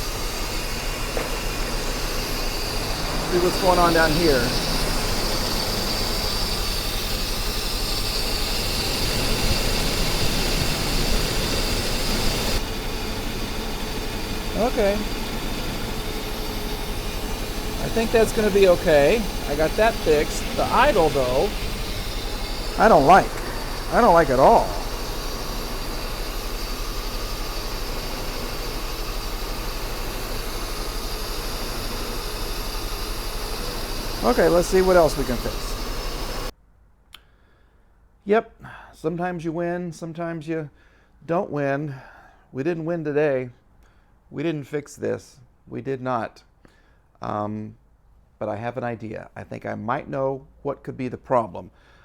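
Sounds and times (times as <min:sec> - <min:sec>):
car engine idling: 0:00.0 - 0:36.5
high whine: 0:00.0 - 0:36.5.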